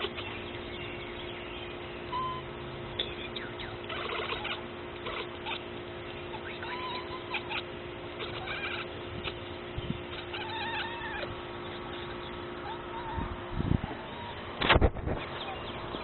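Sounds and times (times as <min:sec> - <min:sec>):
cat chattering: 0:03.0 - 0:14.4
cat chirps: 0:03.9 - 0:05.7, 0:06.3 - 0:09.4, 0:10.1 - 0:11.4.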